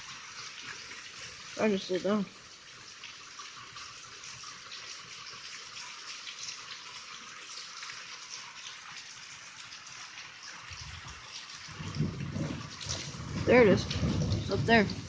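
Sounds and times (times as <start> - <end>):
heavy rain pouring: 1.4 - 2.4, 10.6 - 15.0.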